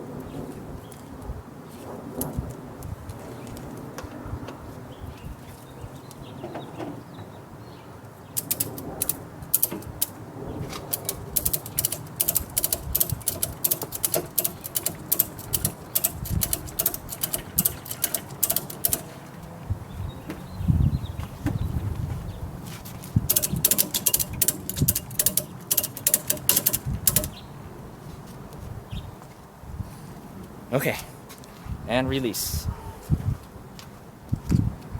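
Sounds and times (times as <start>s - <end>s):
metallic ratchet clicks: 8.4s - 10.2s, 10.9s - 19.2s, 23.3s - 27.4s.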